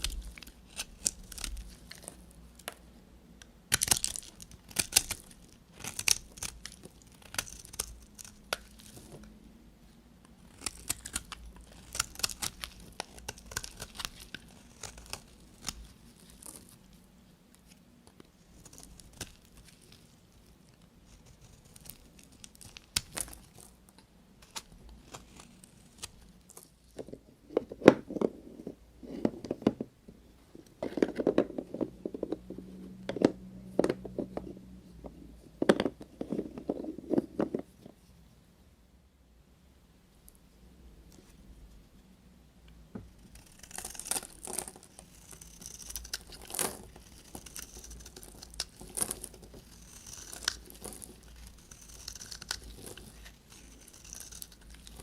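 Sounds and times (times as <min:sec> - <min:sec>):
knife cutting through soap: 0:43.3 - 0:55.0.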